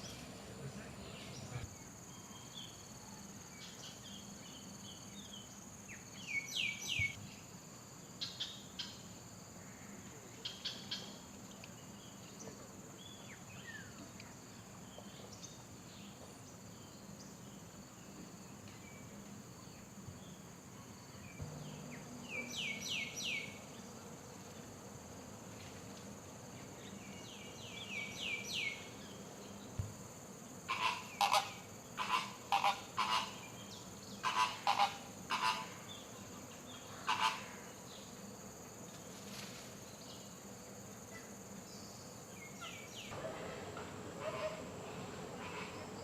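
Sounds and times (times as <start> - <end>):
birds chirping: 0.0 - 2.5, 21.1 - 24.8, 41.8 - 46.0
insect drone: 0.0 - 46.0.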